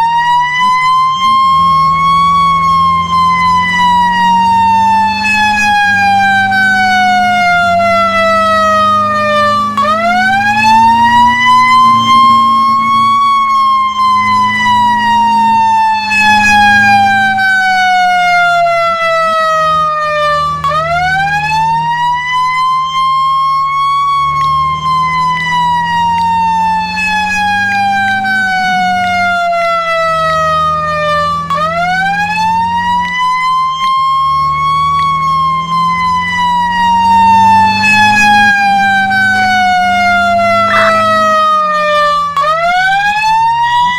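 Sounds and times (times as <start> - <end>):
fire engine siren wailing: 0.0 - 43.9
low engine drone: 39.3 - 42.2.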